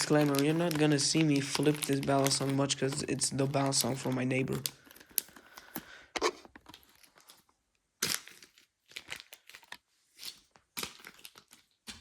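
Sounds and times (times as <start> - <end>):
packaging rustling: 0.0 - 7.5.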